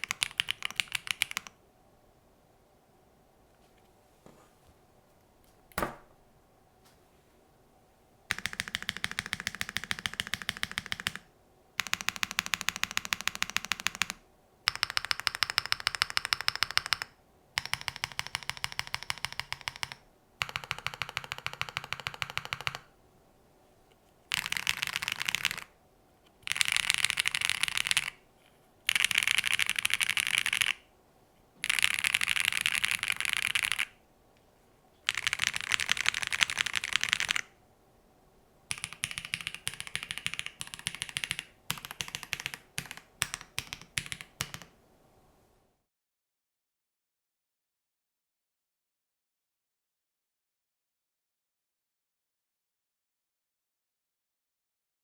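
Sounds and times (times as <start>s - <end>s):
mechanical keyboard typing: 0.0s - 1.6s, 8.3s - 22.9s, 24.3s - 25.7s, 26.4s - 28.2s, 28.8s - 30.8s, 31.6s - 34.0s, 35.1s - 37.5s, 38.7s - 44.7s.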